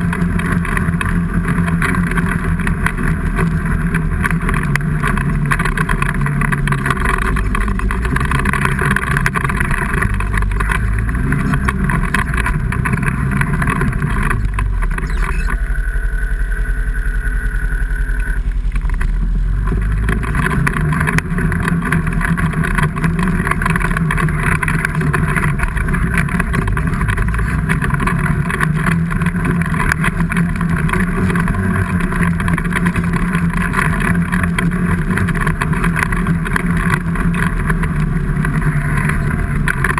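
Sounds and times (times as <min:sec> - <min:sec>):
vehicle engine running loudly: 0:00.0 - 0:39.9.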